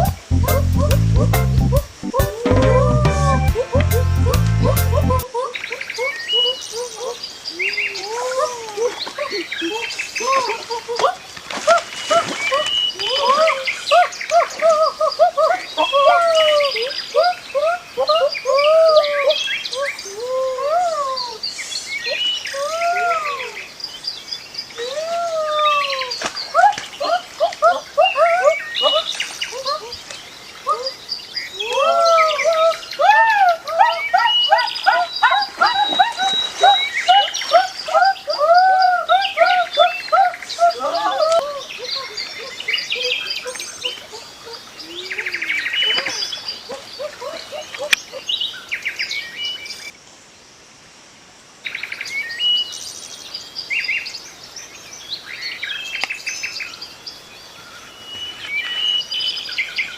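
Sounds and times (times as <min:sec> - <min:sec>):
birds calling and chirping: 0:00.0 - 0:49.9.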